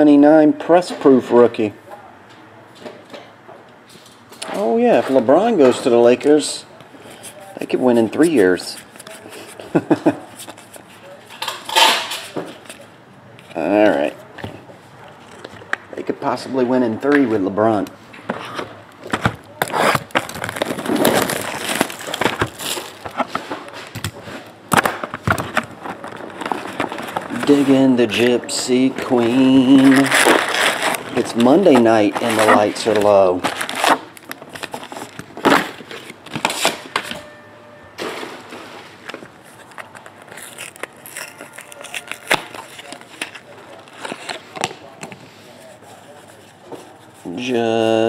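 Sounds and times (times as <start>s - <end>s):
wrapper crinkling: 18.4s - 24.6s, 25.2s - 36.9s, 38.6s - 44.7s.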